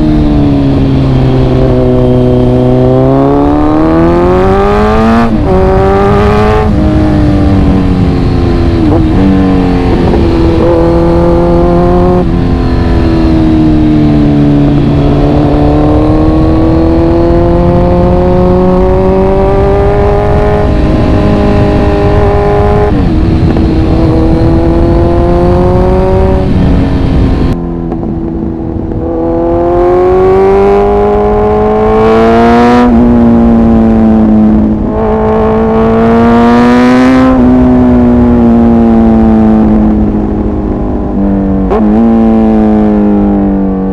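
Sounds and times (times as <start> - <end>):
motorcycle engine accelerating: 0.0 - 43.9.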